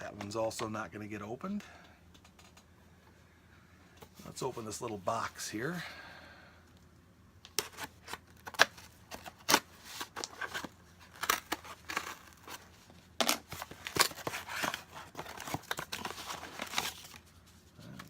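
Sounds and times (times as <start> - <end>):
packaging rustling and tearing: 7.6 - 17.4.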